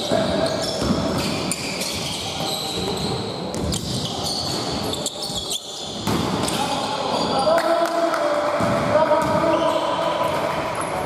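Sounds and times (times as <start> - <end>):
shoes squeaking on court: 0.0 - 7.5
basketball bouncing on court: 8.6 - 10.6.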